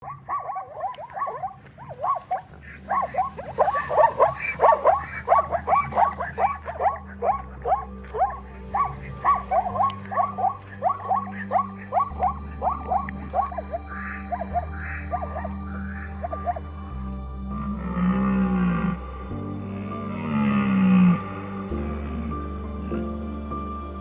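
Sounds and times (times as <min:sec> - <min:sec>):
animal squealing calls: 0:00.0 - 0:16.7
soft slow background music: 0:00.0 - 0:24.0.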